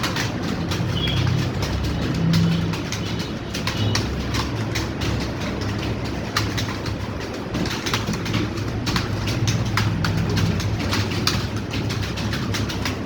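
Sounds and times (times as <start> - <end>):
computer keyboards clattering: 0.0 - 13.0.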